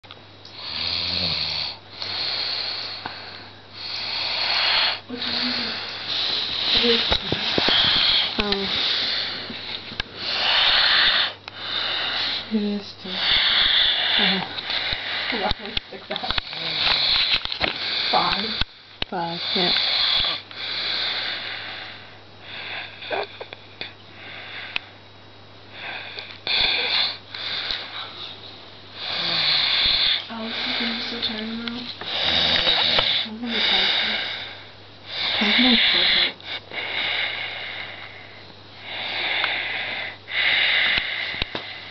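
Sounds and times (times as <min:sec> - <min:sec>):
person snoring loudly: 0:00.6 - 0:02.3, 0:29.0 - 0:31.0, 0:32.1 - 0:34.3
boy snoring loudly: 0:00.6 - 0:02.8, 0:03.8 - 0:05.9, 0:10.2 - 0:12.4, 0:13.1 - 0:15.6, 0:16.2 - 0:18.6, 0:19.2 - 0:21.8, 0:29.0 - 0:31.3, 0:32.0 - 0:34.5, 0:35.2 - 0:37.6.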